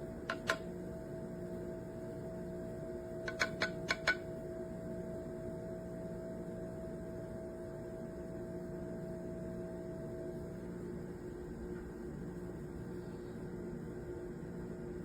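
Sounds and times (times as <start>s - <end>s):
steady hum: 0.0s - 15.0s
quick clicks: 3.3s - 4.2s.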